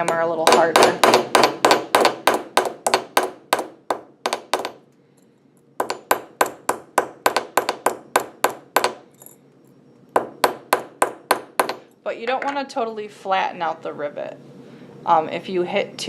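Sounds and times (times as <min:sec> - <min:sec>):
small hammer tapping on rivet: 0:05.8 - 0:09.0, 0:10.2 - 0:11.8.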